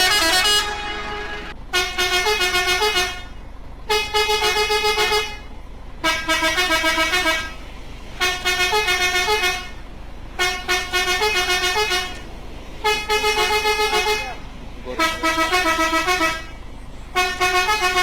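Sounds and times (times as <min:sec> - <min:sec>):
pulsing vehicle air horn: 0:00.0 - 0:07.6, 0:08.2 - 0:12.2, 0:12.8 - 0:18.0.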